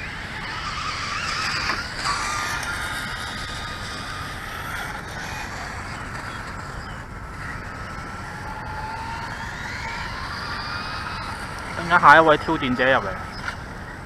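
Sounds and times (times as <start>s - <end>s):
electric motors whining: 0.0s - 14.0s.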